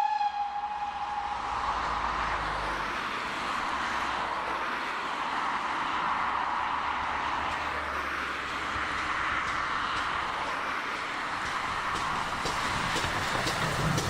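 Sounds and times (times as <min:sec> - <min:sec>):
steam locomotive hissing: 0:10.0 - 0:14.0.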